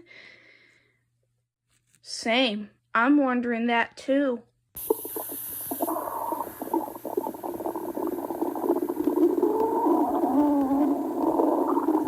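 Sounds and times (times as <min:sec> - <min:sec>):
stomach growling and gurgling: 0:04.8 - 0:12.0.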